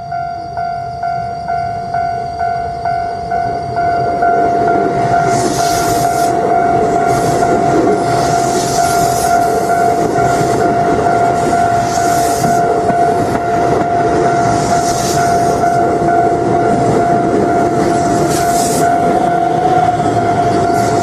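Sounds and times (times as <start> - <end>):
level crossing alarm ringing: 0.0 - 21.0.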